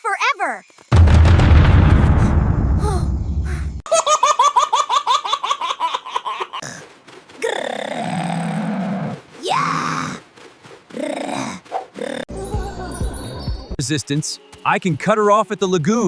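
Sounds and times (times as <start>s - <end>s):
high-pitched rapid cartoon laughter: 3.9s - 6.6s.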